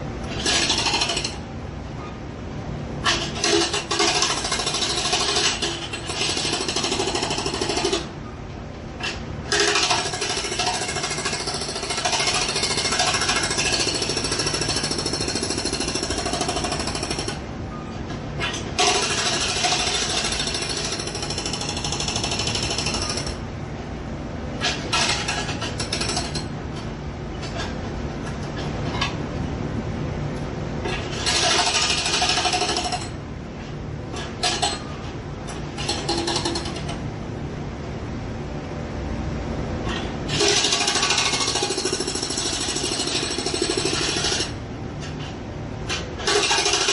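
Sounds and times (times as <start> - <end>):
jackhammer hammering: 3.4 - 8.1, 9.5 - 17.4, 40.3 - 44.5.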